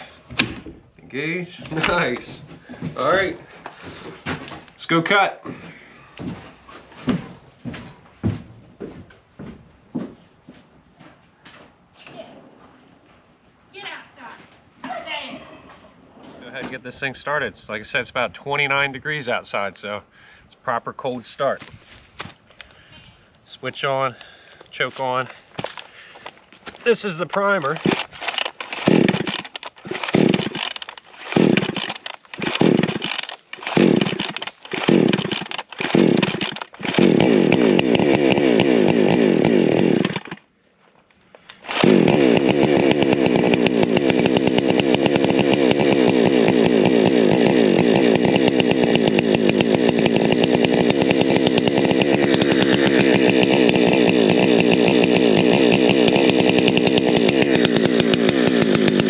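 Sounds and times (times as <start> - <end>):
chainsaw engine running: 25.2 - 40.5, 41.5 - 59.0
chainsaw pull-cord pulls: 25.6 - 40.5, 41.1 - 59.0.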